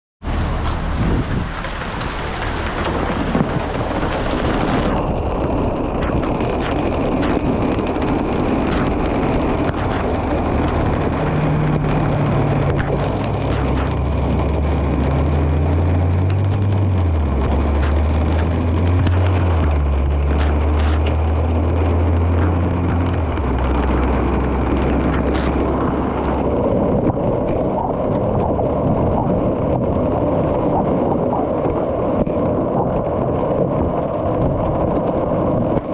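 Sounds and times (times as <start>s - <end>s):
low steady rumble: 0.2s - 35.9s
hail clattering: 0.6s - 4.8s.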